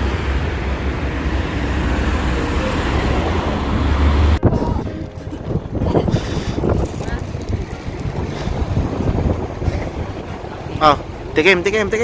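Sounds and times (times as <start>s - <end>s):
wind buffeting microphone: 4.2s - 12.0s.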